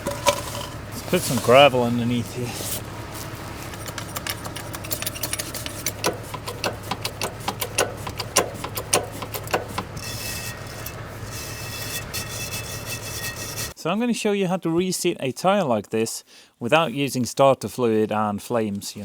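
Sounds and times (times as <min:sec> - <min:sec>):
gravel clattering: 0:00.0 - 0:08.2
engine humming: 0:00.0 - 0:13.8.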